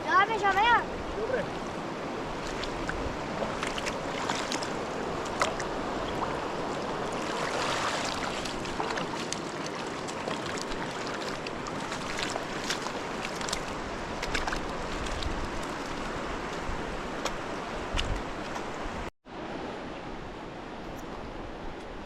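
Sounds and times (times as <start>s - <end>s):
river water rushing: 0.0s - 22.0s
small sharp splashes and ticks: 1.5s - 18.8s.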